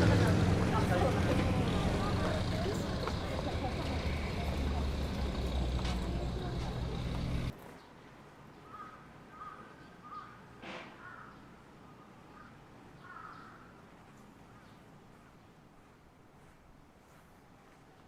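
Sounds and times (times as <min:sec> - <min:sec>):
crows cawing: 0:01.6 - 0:05.8, 0:08.6 - 0:11.4, 0:12.3 - 0:13.8.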